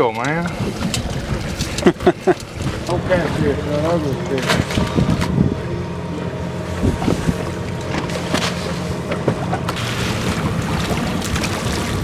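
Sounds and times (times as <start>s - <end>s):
wind buffeting microphone: 0.0s - 8.3s
boat engine humming: 0.0s - 12.0s.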